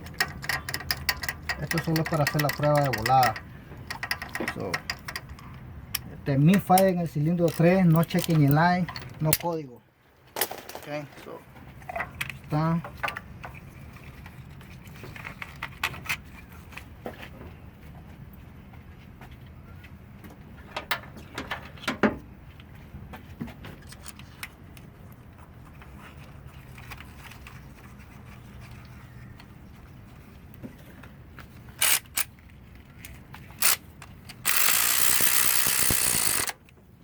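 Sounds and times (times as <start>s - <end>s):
hand tools clinking on metal: 0.0s - 9.6s.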